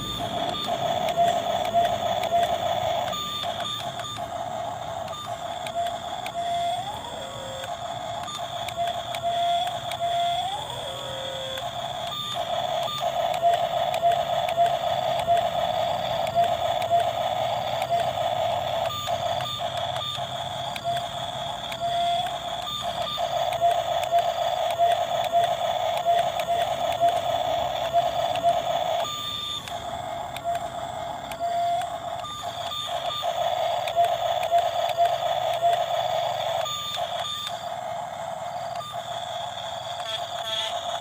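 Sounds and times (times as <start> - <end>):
clicks: 0.0 - 41.0
toy excavator motor whirring: 0.0 - 41.0.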